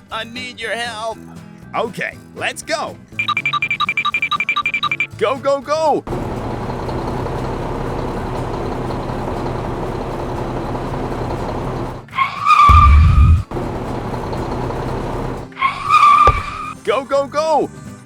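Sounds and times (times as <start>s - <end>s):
vehicle engine running: 6.1s - 15.5s
tyre screech: 12.1s - 13.5s, 15.5s - 16.8s
loud heavy low thump: 12.7s - 13.5s, 16.3s - 16.6s.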